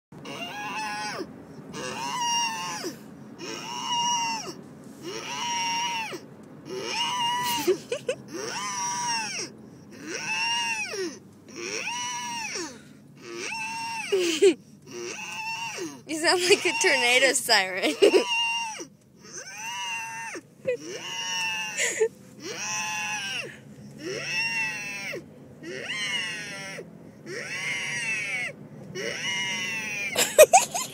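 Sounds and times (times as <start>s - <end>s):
boy wailing like a siren: 0.2s - 30.9s
boy's squeaky yelps: 0.2s - 30.9s.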